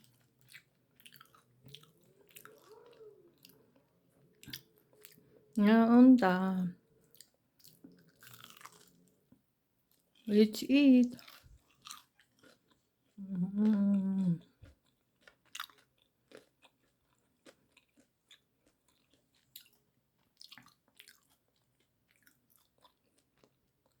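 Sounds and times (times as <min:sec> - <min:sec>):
person chewing: 0:00.0 - 0:05.6, 0:07.0 - 0:09.2, 0:11.2 - 0:24.0
person humming: 0:13.2 - 0:14.4.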